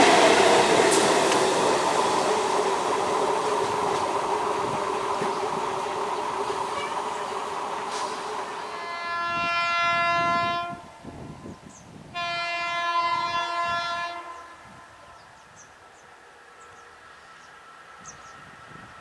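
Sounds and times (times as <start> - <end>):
rumble of running train: 0.0 - 19.0
electric train horn blasts: 8.5 - 11.4, 12.1 - 15.4.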